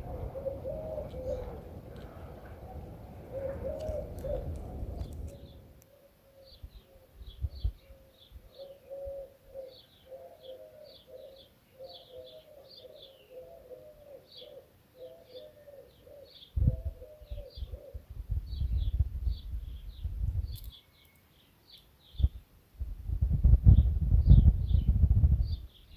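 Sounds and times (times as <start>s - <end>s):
dove cooing: 0.0s - 5.7s, 7.8s - 18.1s
low rumble: 0.0s - 5.8s
small birds chirping: 0.0s - 22.5s, 23.6s - 25.9s.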